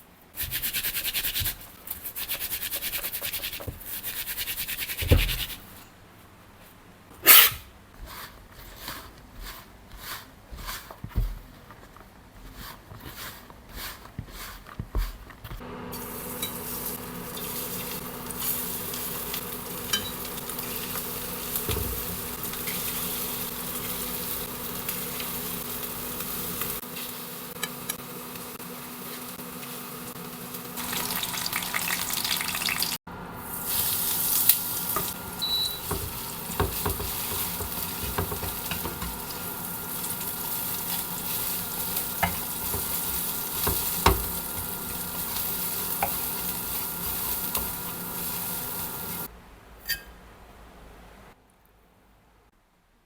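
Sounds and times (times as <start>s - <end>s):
batter-coated food frying in oil: 15.9s - 49.3s.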